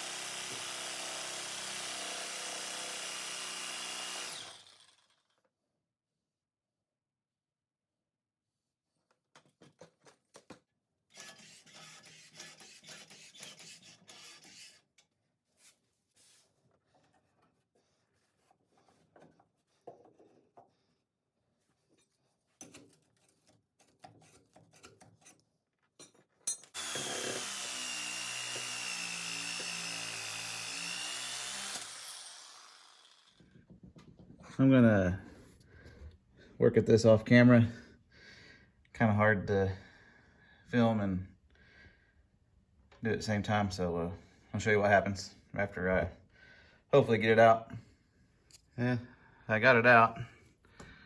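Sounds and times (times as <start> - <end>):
reciprocating saw running: 0.0 - 5.3, 26.8 - 33.4.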